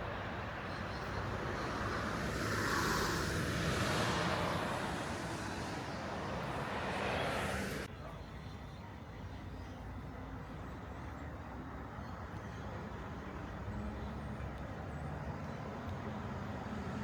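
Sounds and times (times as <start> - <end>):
road vehicle rushing: 0.0 - 7.9.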